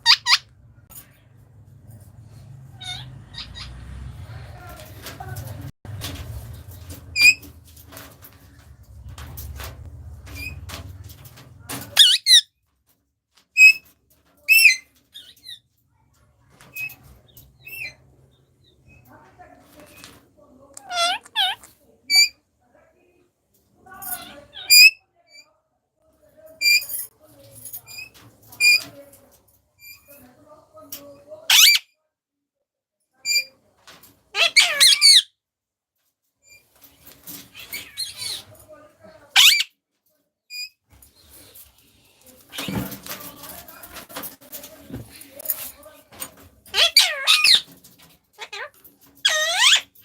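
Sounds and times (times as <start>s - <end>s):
parrots squeaky calls: 0.0s - 0.5s, 2.7s - 4.2s, 7.2s - 7.4s, 12.0s - 12.5s, 20.8s - 22.4s, 24.1s - 25.4s, 31.5s - 31.9s, 34.3s - 35.3s, 37.5s - 38.5s, 39.3s - 39.7s, 46.7s - 47.7s, 48.4s - 50.0s.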